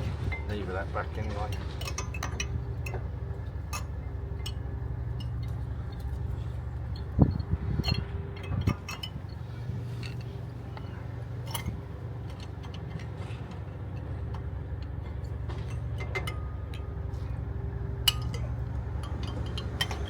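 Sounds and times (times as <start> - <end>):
steady low hum: 0.0 - 20.0
metal tool clicking and clinking: 1.2 - 3.0, 3.6 - 6.1, 6.9 - 13.4, 18.1 - 20.0.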